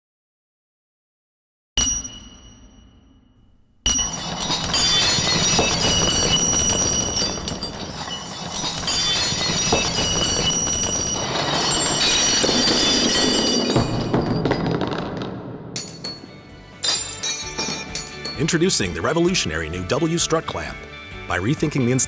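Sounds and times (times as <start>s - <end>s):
dense metallic clatter: 4.0s - 15.0s.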